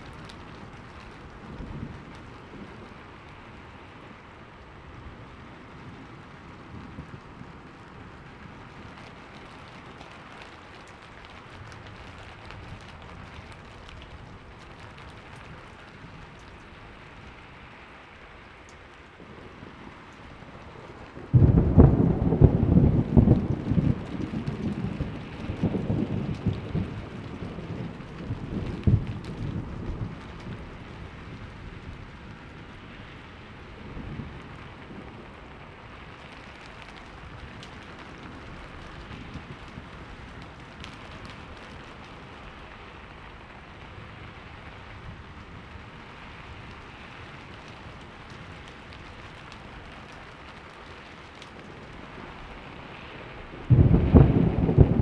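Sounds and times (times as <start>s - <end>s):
steady rain hiss: 0.0s - 55.0s
thunder rumbling: 19.1s - 55.0s
loud thunder peal: 21.3s - 29.2s, 53.6s - 55.0s.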